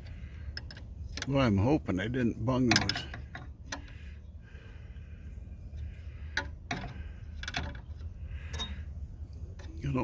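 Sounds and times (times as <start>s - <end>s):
low steady hum: 0.0s - 10.0s.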